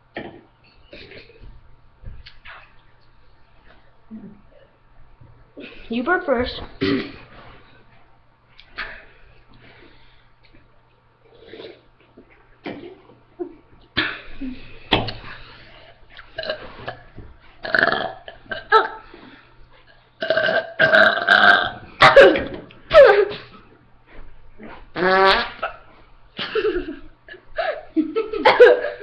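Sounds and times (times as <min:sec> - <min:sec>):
person burping loudly: 0:00.1 - 0:01.3, 0:06.8 - 0:07.2, 0:16.3 - 0:19.0, 0:20.2 - 0:22.6.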